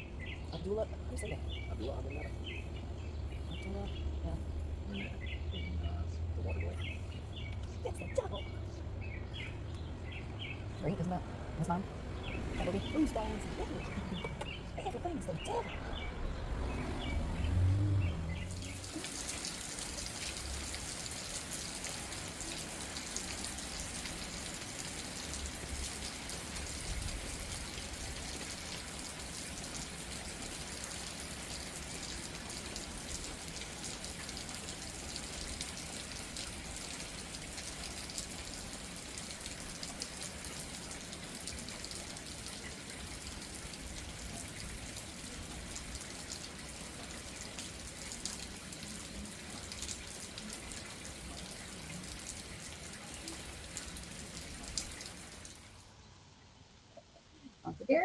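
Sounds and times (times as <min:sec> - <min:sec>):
heavy rain falling: 0:12.2 - 0:55.8.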